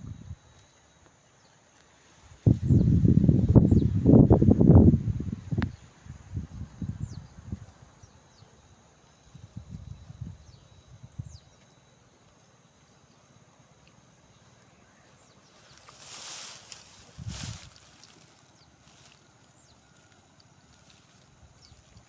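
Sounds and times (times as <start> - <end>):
high insect drone: 0.0 - 22.0
rustling noise: 15.5 - 22.0.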